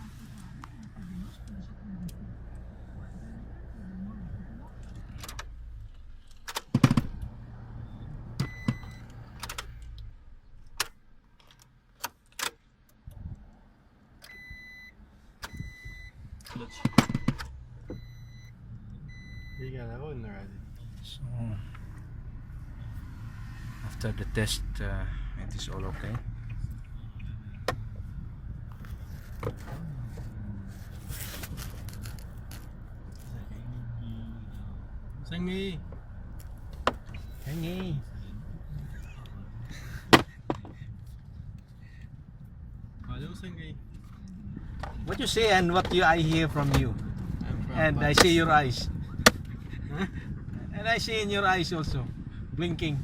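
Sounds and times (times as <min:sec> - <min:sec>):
low steady hum: 0:00.0 - 0:11.6
scraping and clicking of handled objects: 0:28.8 - 0:33.4.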